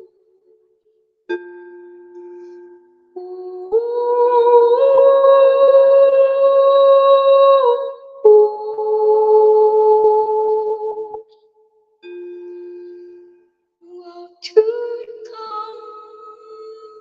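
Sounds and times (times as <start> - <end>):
woman singing long held notes: 3.2 - 11.2, 13.8 - 17.0.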